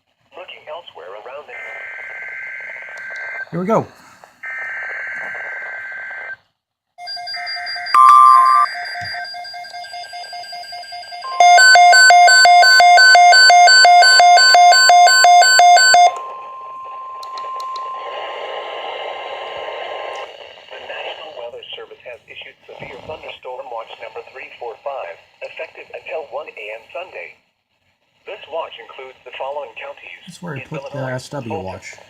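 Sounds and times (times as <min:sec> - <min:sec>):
pulsed beeping alarm: 0:07.0 - 0:20.0
steady warning tone: 0:07.0 - 0:20.4
short loud beep: 0:07.9 - 0:09.2, 0:11.2 - 0:18.4.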